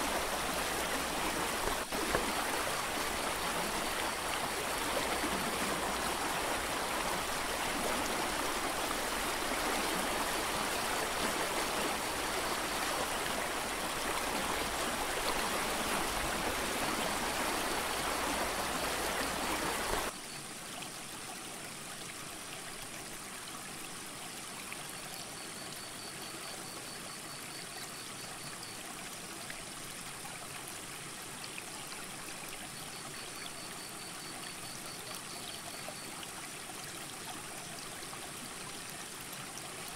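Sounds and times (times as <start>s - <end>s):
creek water rushing: 0.0s - 24.8s.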